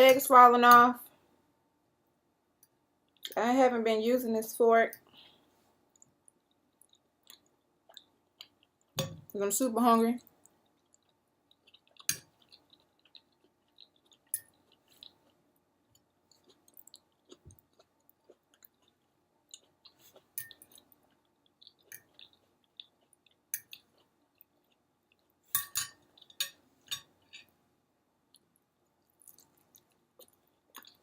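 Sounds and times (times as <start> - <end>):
chewing with wet mouth smacks: 10.4 - 25.4, 29.1 - 31.0.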